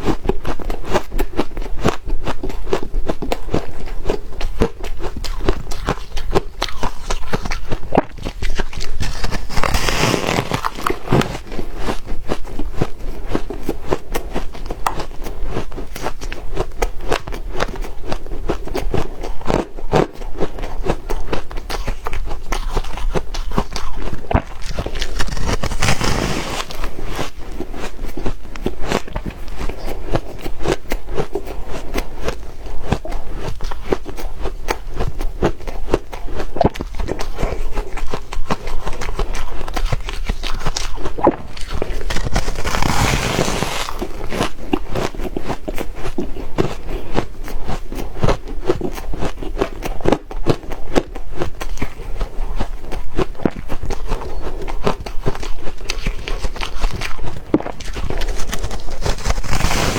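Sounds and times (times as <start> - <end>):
chewing crunchy ice: 0.0 - 59.9.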